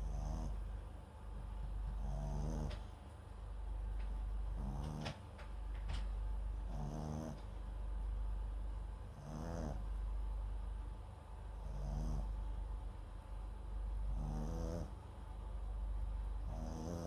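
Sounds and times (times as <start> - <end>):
small dog snoring: 0.0 - 0.7, 1.9 - 2.9, 4.6 - 5.2, 6.6 - 7.6, 9.1 - 10.0, 11.5 - 12.6, 14.0 - 15.0, 16.4 - 17.0.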